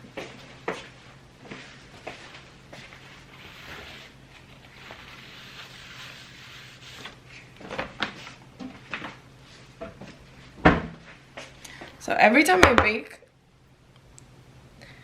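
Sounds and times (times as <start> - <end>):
soft rubbing and rustling: 0.2 - 11.5.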